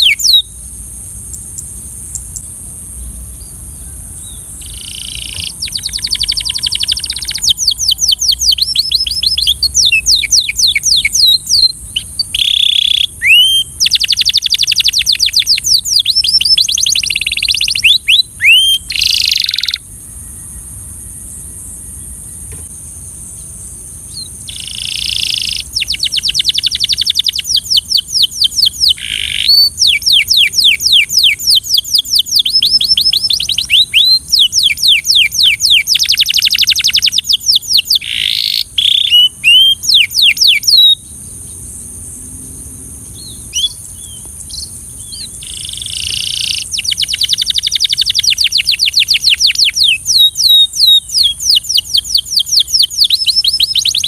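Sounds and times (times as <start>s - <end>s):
canary trilling: 4.6s - 19.8s
high-pitched hiss: 18.7s - 50.4s.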